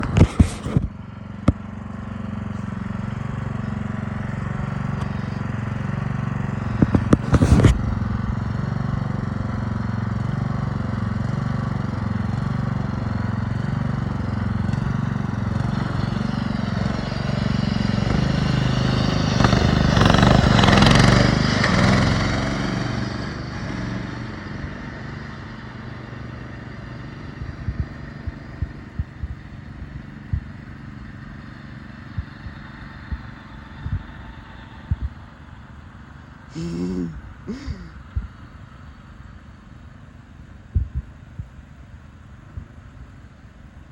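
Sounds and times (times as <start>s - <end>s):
riding lawn mower engine: 0.0s - 43.9s.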